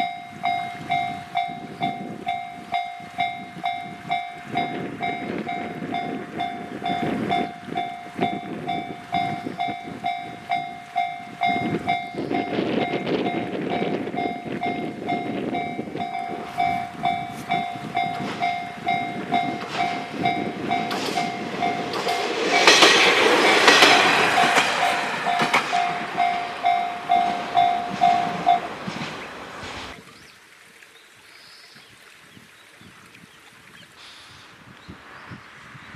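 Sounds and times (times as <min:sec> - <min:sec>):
level crossing alarm: 0:00.0 - 0:22.9, 0:23.6 - 0:28.8
rush of steam and exhaust: 0:00.0 - 0:30.0, 0:34.0 - 0:35.9
steam locomotive working hard: 0:00.0 - 0:30.0.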